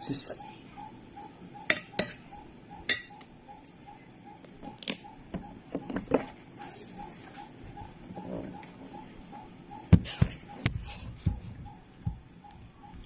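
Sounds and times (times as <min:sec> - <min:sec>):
metal spoon clinking on plate: 0:01.7 - 0:02.2.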